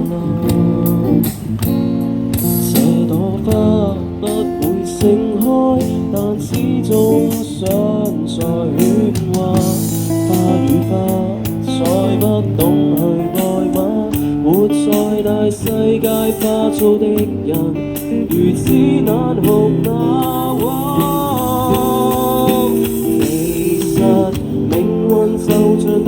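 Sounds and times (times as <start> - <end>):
guitar accompaniment: 0.0 - 26.0
person singing: 2.7 - 26.0.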